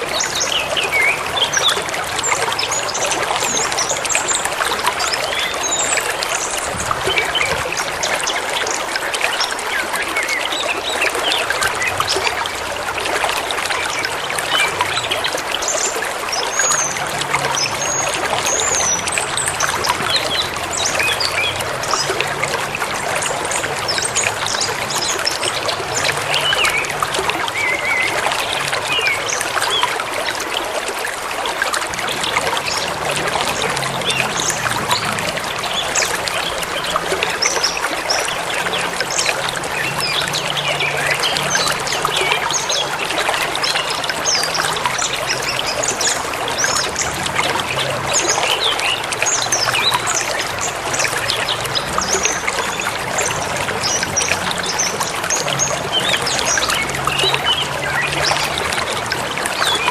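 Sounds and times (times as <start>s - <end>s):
stream babbling: 0.0s - 59.9s.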